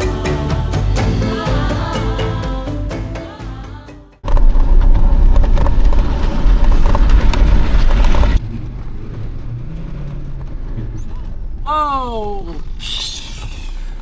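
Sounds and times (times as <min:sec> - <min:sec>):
vehicle engine and tyres rumbling: 0:04.2 - 0:14.0.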